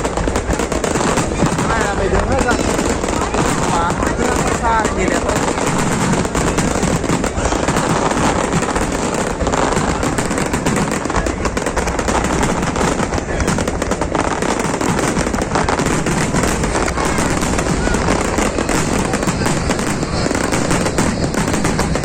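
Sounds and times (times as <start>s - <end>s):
fireworks crackling and popping: 0.0s - 22.0s.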